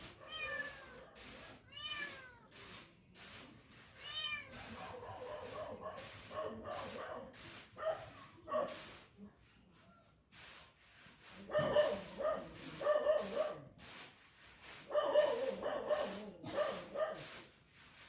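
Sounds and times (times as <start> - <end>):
dog barking: 4.5 - 8.8, 11.5 - 13.7, 14.8 - 17.3.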